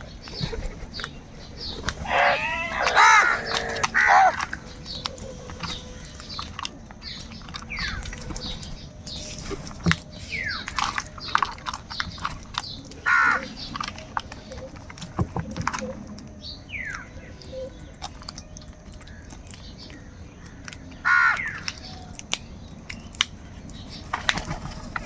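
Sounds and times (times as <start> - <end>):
crows cawing: 1.6 - 6.8, 13.0 - 13.7, 21.0 - 21.7.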